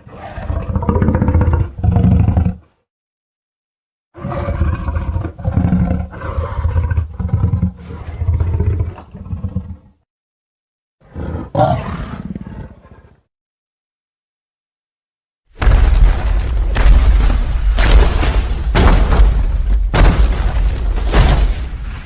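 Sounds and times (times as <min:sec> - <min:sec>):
deep monster roars and growls: 0:00.0 - 0:02.8, 0:04.2 - 0:10.0.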